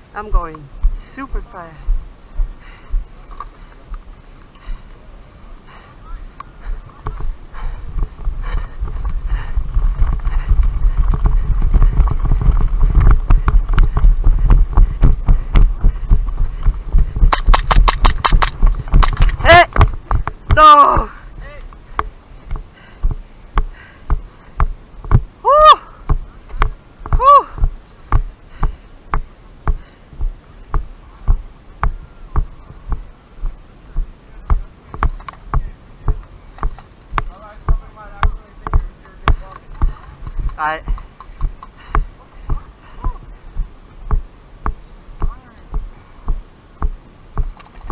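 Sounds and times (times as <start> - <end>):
wind buffeting microphone: 0.0 - 47.9
footsteps running: 6.6 - 25.4, 26.1 - 47.9
sharp clicks: 17.3 - 20.6.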